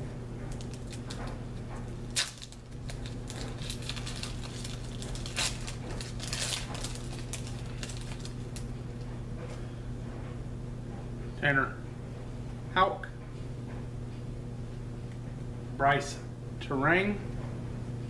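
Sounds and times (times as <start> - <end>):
low electrical hum: 0.0 - 18.0
wrapper tearing and crinkling: 0.5 - 1.2, 2.1 - 8.7.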